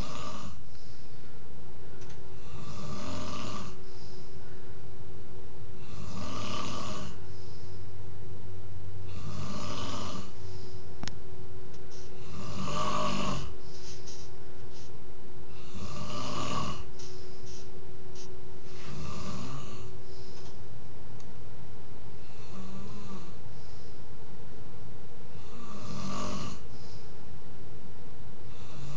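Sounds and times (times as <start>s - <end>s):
man snoring: 0.0s - 0.6s, 2.3s - 4.1s, 5.8s - 7.3s, 9.0s - 10.8s, 12.1s - 13.6s, 15.5s - 17.0s, 18.6s - 20.0s, 22.1s - 23.7s, 25.3s - 26.8s, 28.4s - 28.9s.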